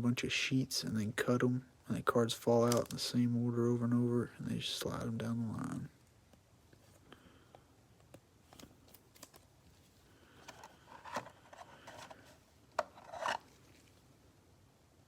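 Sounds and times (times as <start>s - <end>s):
trading cards rubbing and sliding: 10.4s - 13.9s.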